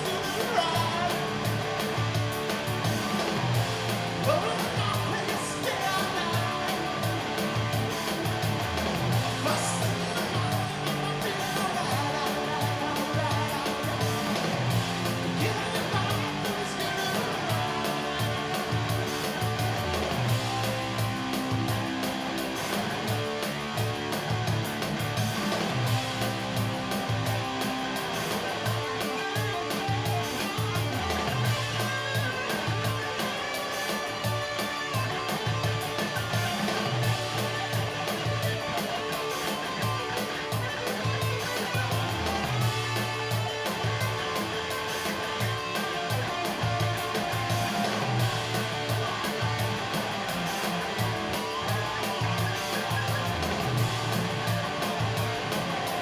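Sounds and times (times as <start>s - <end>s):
bass notes: 0.0s - 33.2s, 35.0s - 38.7s, 39.8s - 56.0s
electric guitar: 0.0s - 56.0s
rock music: 0.0s - 56.0s
steady drum beat: 0.0s - 56.0s.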